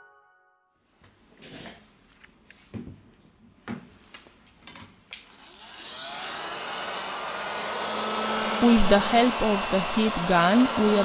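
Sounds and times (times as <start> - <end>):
heat gun blower hiss: 8.4 - 11.0.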